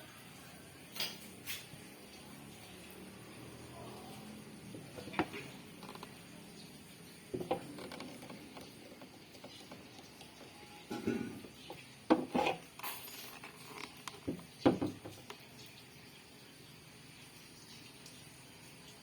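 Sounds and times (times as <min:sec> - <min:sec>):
metal tools clinking: 0:12.4 - 0:14.0.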